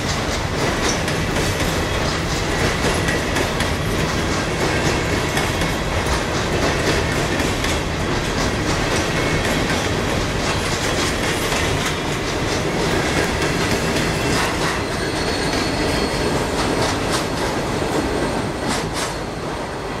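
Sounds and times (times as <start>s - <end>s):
train wheels clattering over rail joints: 0.0s - 19.5s
faint high wheel squeal: 14.7s - 16.7s.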